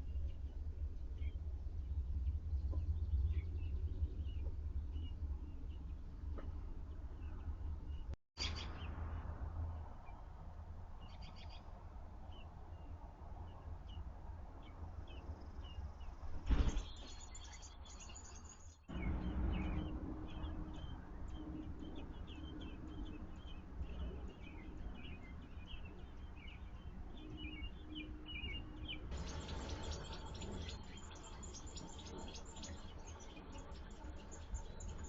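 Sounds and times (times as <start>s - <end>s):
steady low rumble: 0.0s - 11.1s, 18.9s - 35.0s
birds chirping: 14.6s - 35.0s.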